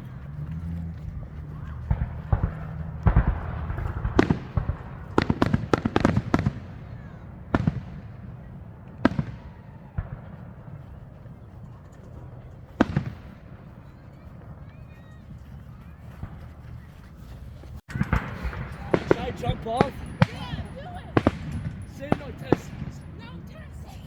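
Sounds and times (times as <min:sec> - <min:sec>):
fireworks bangs echoing: 0:00.6 - 0:10.9, 0:12.3 - 0:13.7, 0:17.8 - 0:24.0.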